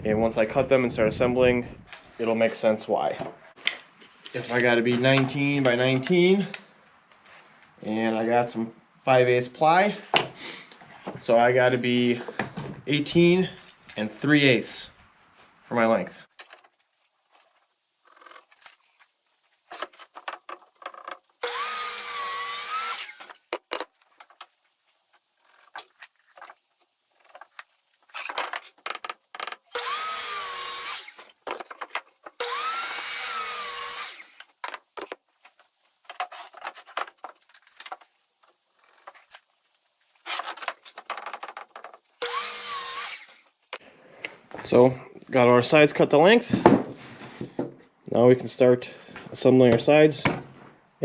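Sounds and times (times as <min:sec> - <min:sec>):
wooden boards knocking and clattering: 0:19.7 - 0:21.2, 0:31.4 - 0:32.4, 0:34.6 - 0:38.1, 0:40.3 - 0:42.0
electric power saw cutting wood: 0:21.0 - 0:23.4, 0:29.0 - 0:34.5, 0:42.2 - 0:43.5.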